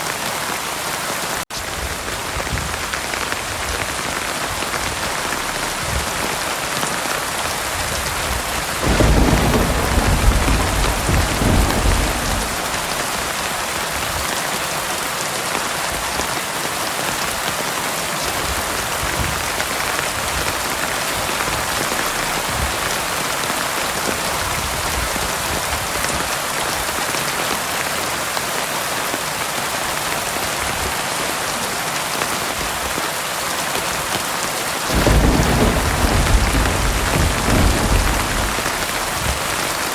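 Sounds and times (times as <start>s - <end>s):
heavy rain falling: 0.0s - 39.9s
low thunder rumble: 2.6s - 14.2s, 34.9s - 39.9s.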